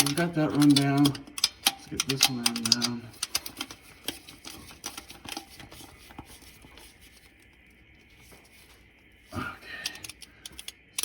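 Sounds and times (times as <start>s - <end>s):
hand ratchet clicking: 0.0s - 5.6s, 9.8s - 11.0s.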